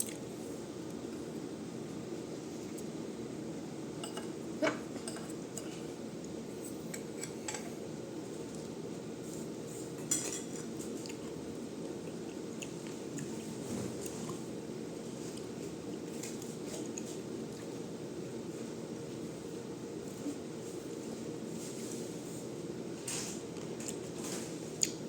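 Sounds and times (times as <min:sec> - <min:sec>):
low background hum: 0:00.0 - 0:25.0
dishes and cutlery clinking: 0:04.0 - 0:05.8, 0:10.0 - 0:10.7.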